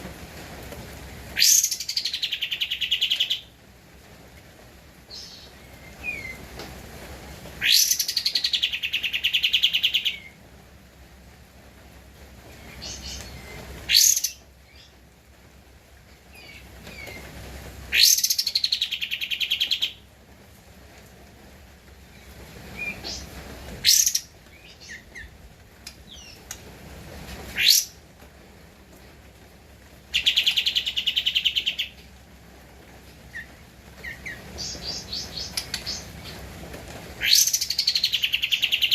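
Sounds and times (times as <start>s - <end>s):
bird singing: 30.2s - 32.0s, 33.4s - 36.4s.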